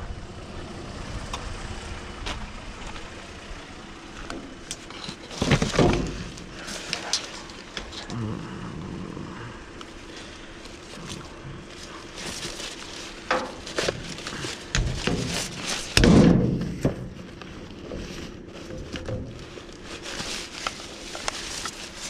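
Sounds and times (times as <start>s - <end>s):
low rumble: 0.0s - 20.5s
scraping rustle: 2.3s - 22.0s
junk clicking and knocking: 4.2s - 8.2s, 11.1s - 19.8s.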